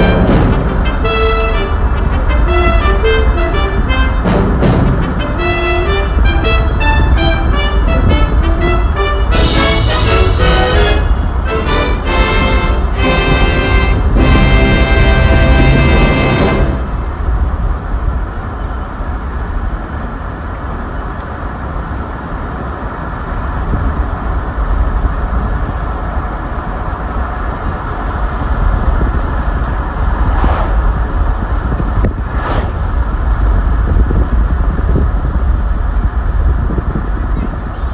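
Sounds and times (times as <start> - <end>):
road and engine rumble: 0.0 - 37.9
brief hissing swells: 32.2 - 33.0.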